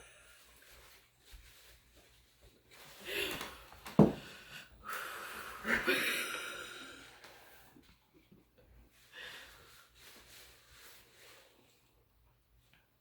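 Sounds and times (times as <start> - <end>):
person breathing hard and wheezily: 2.8 - 7.8, 9.0 - 11.3.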